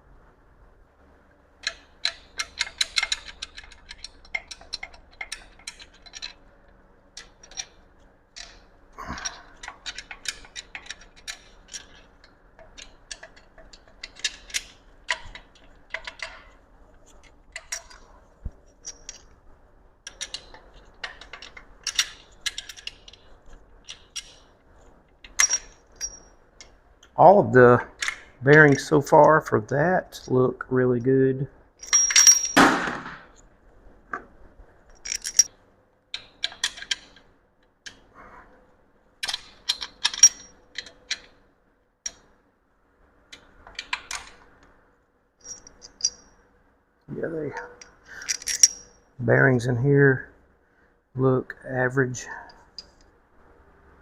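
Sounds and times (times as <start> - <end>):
metal tools and parts clinking: 1.6 - 6.5, 7.2 - 18.1, 18.7 - 19.4, 20.0 - 24.5, 25.2 - 26.8, 31.8 - 33.2, 34.9 - 35.5, 39.2 - 41.4, 45.4 - 46.4, 47.5 - 49.1.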